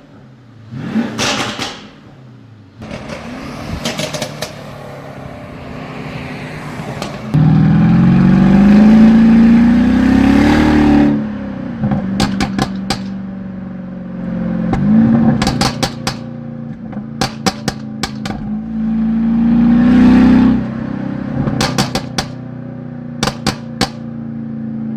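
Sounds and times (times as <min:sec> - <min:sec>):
car engine revving: 0:00.0 - 0:24.8
exhaust pops and crackles: 0:02.8 - 0:04.6, 0:11.8 - 0:13.4, 0:14.7 - 0:18.7, 0:21.4 - 0:22.5, 0:23.2 - 0:24.2.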